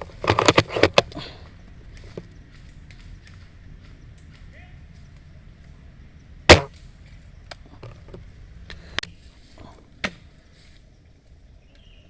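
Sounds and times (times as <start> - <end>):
airsoft gun shot: 6.5 - 6.7.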